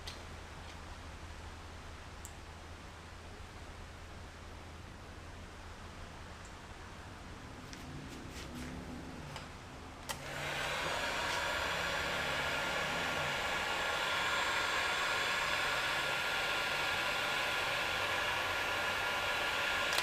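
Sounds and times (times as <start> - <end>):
heat gun blowing with whine: 10.1 - 20.0.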